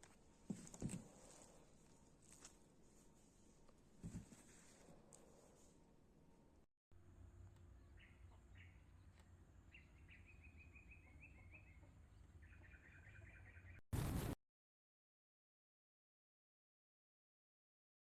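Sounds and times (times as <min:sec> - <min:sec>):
faint bird chirping: 0:07.6 - 0:13.8.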